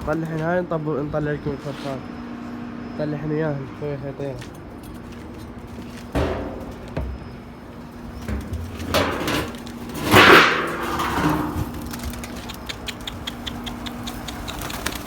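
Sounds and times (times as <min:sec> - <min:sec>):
steady low hum: 0:00.0 - 0:15.0
pigeons rustling clatter: 0:04.0 - 0:15.0
sharp knocks: 0:06.2 - 0:07.4.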